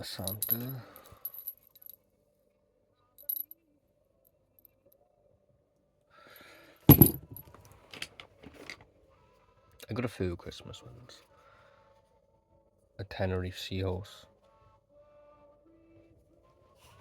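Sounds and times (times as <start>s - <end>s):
magnets clicking and clinking: 0.0s - 1.9s, 3.2s - 3.5s
knocks on box: 6.9s - 7.2s.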